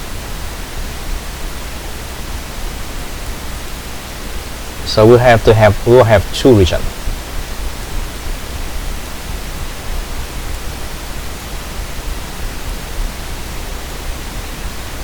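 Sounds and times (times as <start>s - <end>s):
background hiss: 4.6s - 7.1s.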